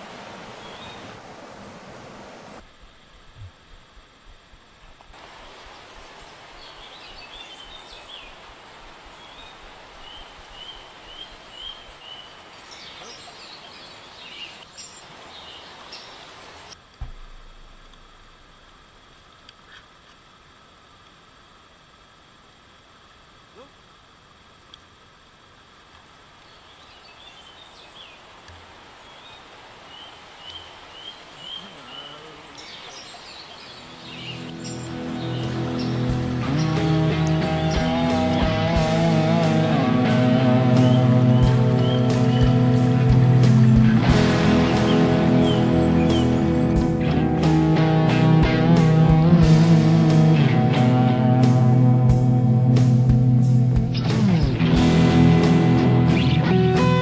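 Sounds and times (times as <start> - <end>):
birds chirping: 0.0 - 2.6, 5.5 - 16.8, 26.4 - 49.3, 56.0 - 57.0
river water rushing: 0.0 - 2.6, 5.2 - 19.4, 20.2 - 52.0
low thump: 17.0 - 18.4.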